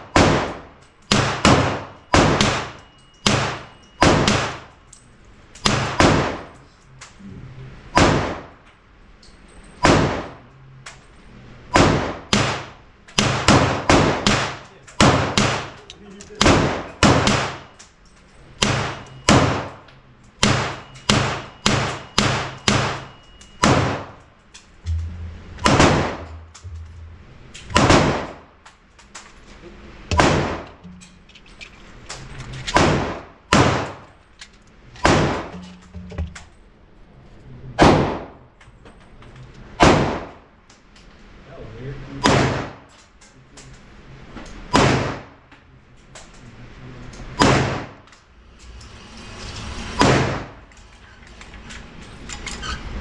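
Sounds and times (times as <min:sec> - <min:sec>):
gunshots with room echo: 0:00.0 - 0:04.7, 0:05.6 - 0:06.6, 0:07.9 - 0:08.6, 0:09.8 - 0:10.4, 0:11.7 - 0:15.8, 0:16.4 - 0:17.8, 0:18.6 - 0:19.8, 0:20.4 - 0:24.2, 0:24.9 - 0:28.6, 0:30.1 - 0:30.8, 0:32.8 - 0:34.1, 0:35.0 - 0:35.6, 0:37.8 - 0:38.4, 0:39.8 - 0:40.5, 0:42.2 - 0:42.8, 0:44.7 - 0:45.4, 0:47.4 - 0:48.1, 0:50.0 - 0:50.6.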